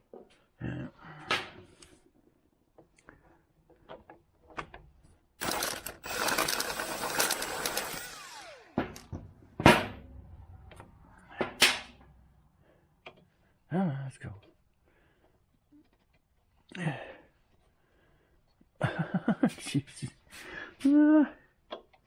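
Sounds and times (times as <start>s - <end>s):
handheld power tool winding down: 5.4s - 9.2s.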